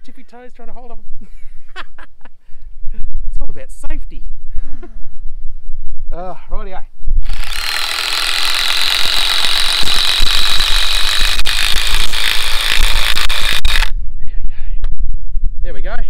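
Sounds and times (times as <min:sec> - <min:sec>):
power tool whining under load: 0:07.2 - 0:13.9.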